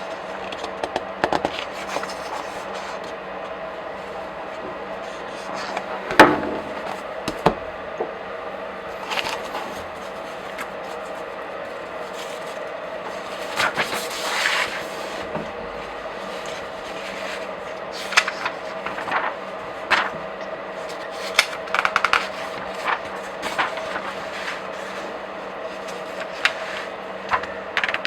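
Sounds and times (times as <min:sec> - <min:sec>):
pages turning: 0:00.5 - 0:07.8, 0:08.8 - 0:28.0
paper snap: 0:09.0 - 0:25.1, 0:25.8 - 0:28.0.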